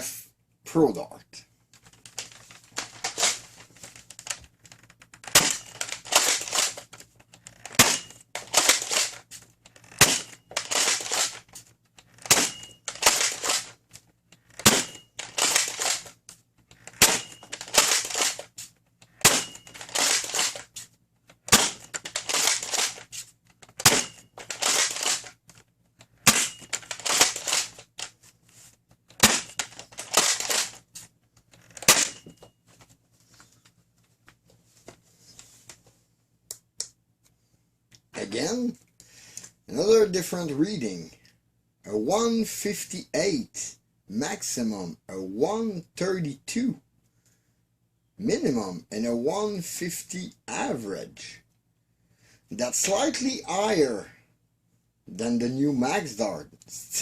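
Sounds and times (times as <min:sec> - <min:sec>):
blaster handling rattle: 0:01.8 - 0:13.8, 0:14.4 - 0:28.2, 0:29.1 - 0:32.5.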